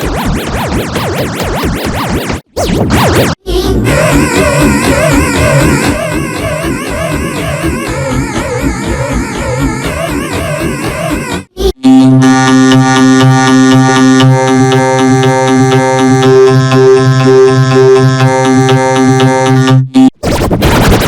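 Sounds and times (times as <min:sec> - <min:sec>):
harsh distorted noise: 0:00.0 - 0:11.7, 0:20.2 - 0:21.0
synthesizer music with light beat: 0:03.9 - 0:20.2.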